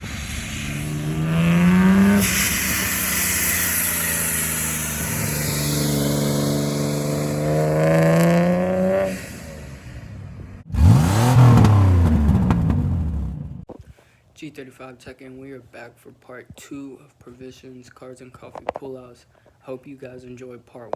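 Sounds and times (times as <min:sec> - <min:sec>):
car passing by: 0:00.0 - 0:10.1
car engine accelerating: 0:00.0 - 0:13.7.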